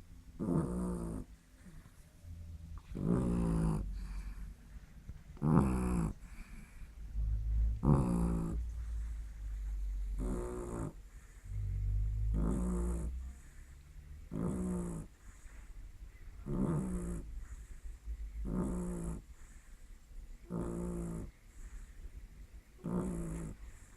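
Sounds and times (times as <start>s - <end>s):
dog snoring: 0.4s - 2.0s, 2.8s - 4.5s, 5.4s - 15.7s, 16.4s - 19.8s, 20.4s - 21.9s, 22.8s - 23.9s.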